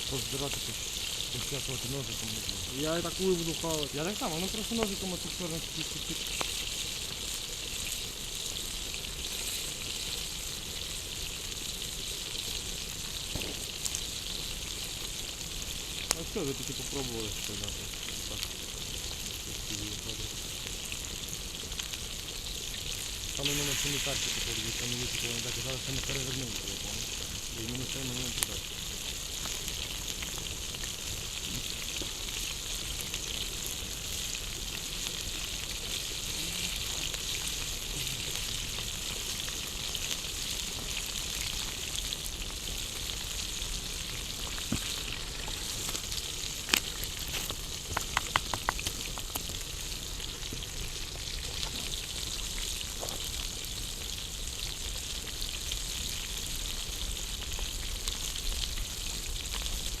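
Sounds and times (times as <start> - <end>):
food sizzling over a fire: 0.0 - 60.0
sharp clicks: 47.9 - 49.0.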